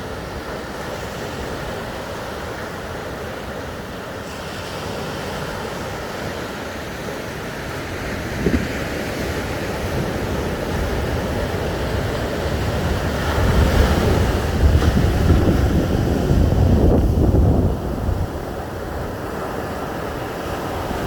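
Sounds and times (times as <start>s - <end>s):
surf washing onto beach: 0.0s - 21.0s
wind buffeting microphone: 5.6s - 21.0s.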